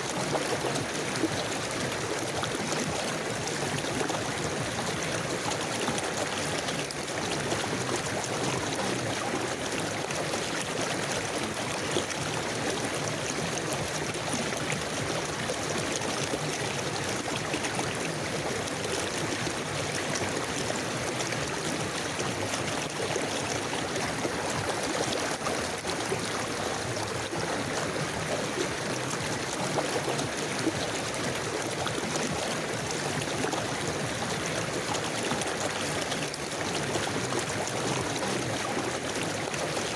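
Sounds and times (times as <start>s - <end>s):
river flowing over stones: 0.0s - 39.9s.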